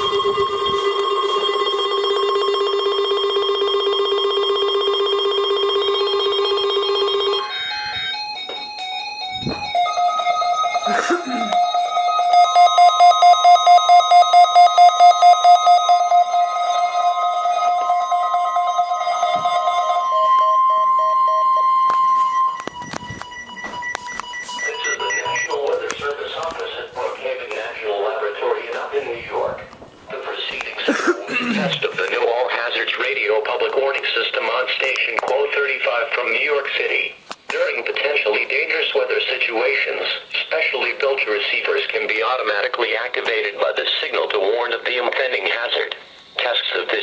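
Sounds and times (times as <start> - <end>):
pulsing alarm buzz: 0.0 - 25.7
short beeps: 19.2 - 25.7.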